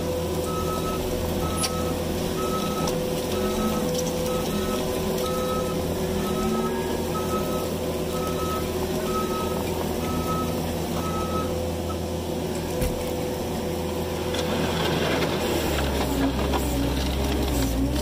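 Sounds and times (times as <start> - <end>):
engine running: 0.0 - 18.0
backup alarm beeping: 0.5 - 11.6.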